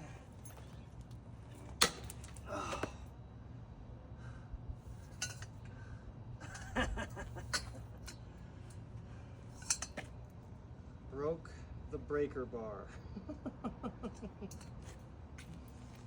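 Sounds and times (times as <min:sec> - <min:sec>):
light metal clinks: 0:00.0 - 0:02.4, 0:05.0 - 0:05.6, 0:09.5 - 0:10.2, 0:14.5 - 0:15.0.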